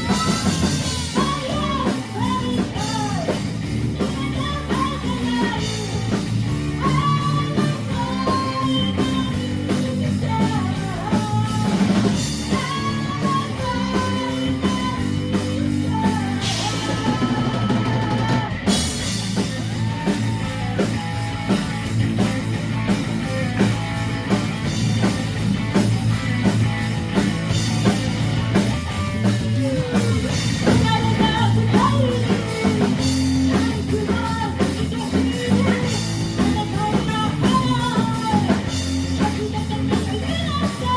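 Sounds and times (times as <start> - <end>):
person singing: 0.0 - 18.8, 29.2 - 40.9
drum kit: 0.0 - 40.9
electric guitar: 0.0 - 40.9.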